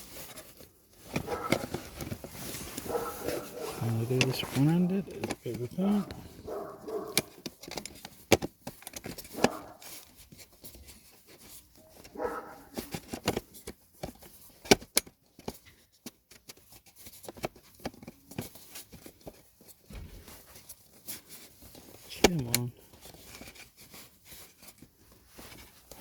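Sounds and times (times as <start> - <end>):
plastic switch clicks and knocks: 6.9 - 9.7.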